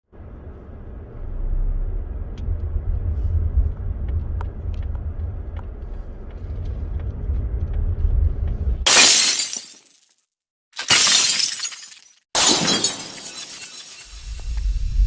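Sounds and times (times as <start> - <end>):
car engine and road noise: 0.0 - 8.9.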